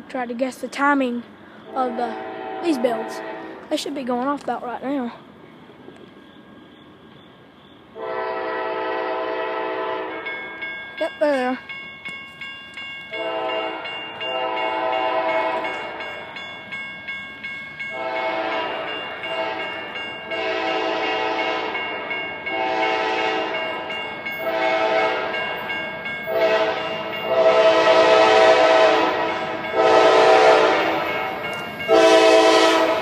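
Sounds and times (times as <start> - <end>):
train air horn blasts: 1.8 - 3.7, 8.0 - 10.3, 13.1 - 16.0, 17.9 - 21.9, 22.5 - 23.8, 24.4 - 25.4, 26.3 - 33.0
level-crossing bells ringing: 10.0 - 33.0.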